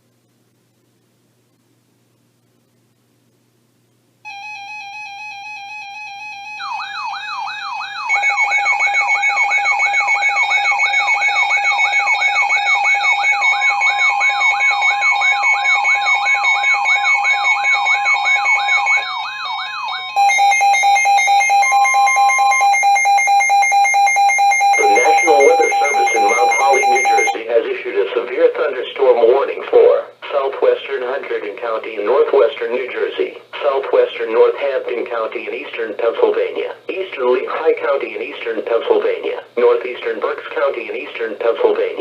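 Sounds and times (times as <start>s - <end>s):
electronic emergency alert tones: 4.3s - 27.4s
warbling alert tone: 24.0s - 27.4s.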